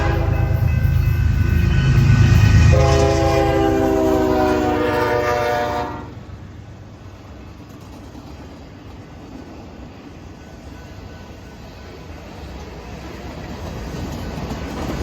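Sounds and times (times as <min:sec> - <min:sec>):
train horn chord: 0:00.0 - 0:06.2
train rumbling past: 0:00.0 - 0:15.0.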